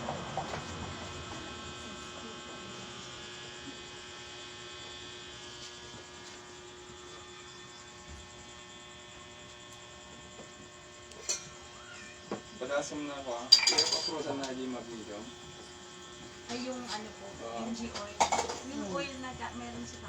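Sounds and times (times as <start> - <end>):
electrical hum: 0.0 - 20.0.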